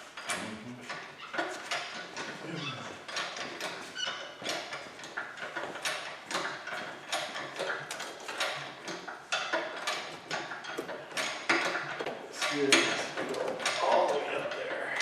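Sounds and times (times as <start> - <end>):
mechanical clicks and knocks: 3.0 - 14.6.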